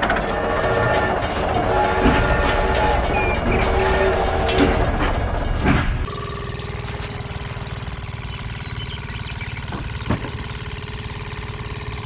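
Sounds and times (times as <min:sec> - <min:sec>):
engine idling: 0:00.0 - 0:12.0.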